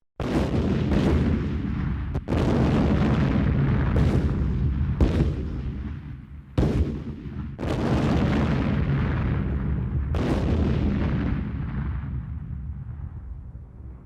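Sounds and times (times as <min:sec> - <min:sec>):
heavy explosions with deep rumble: 0:00.2 - 0:14.0.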